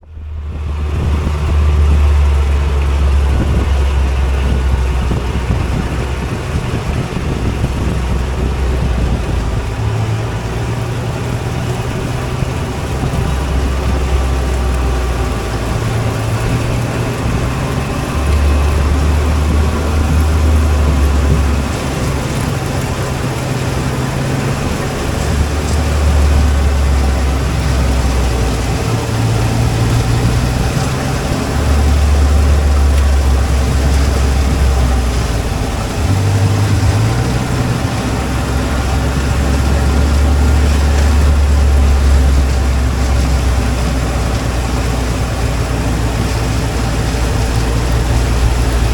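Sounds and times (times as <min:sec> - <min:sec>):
combine harvester engine droning: 0:00.0 - 0:48.9.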